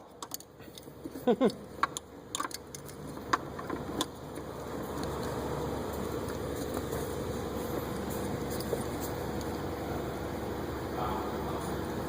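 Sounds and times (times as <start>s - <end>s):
metallic clicks of parts: 0.0s - 4.2s
mechanical engine hum: 0.0s - 12.0s.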